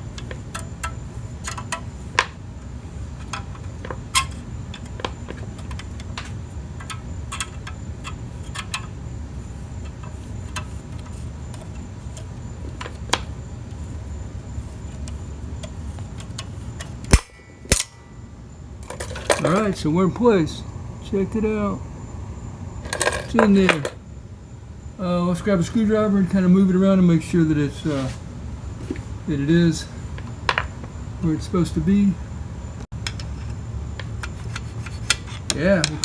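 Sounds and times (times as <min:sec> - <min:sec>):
metallic clicks of hand tools: 0:16.4 - 0:18.0.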